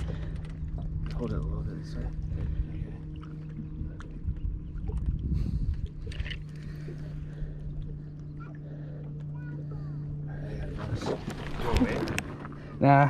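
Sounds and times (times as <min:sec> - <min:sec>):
boat motor humming: 0:00.0 - 0:13.0
water rumbling: 0:00.0 - 0:13.0
wind noise: 0:03.7 - 0:06.4.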